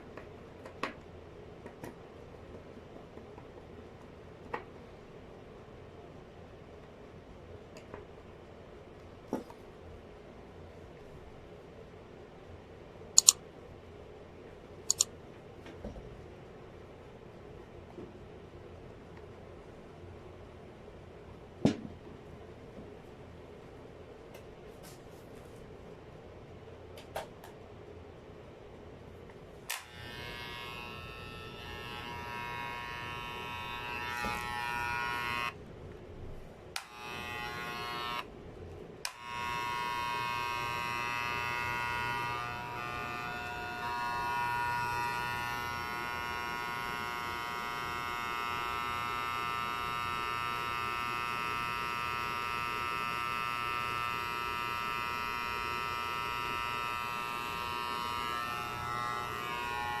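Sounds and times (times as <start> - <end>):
electric hair clipper buzzing: 29.7 - 35.6, 36.8 - 38.3, 39.0 - 60.0.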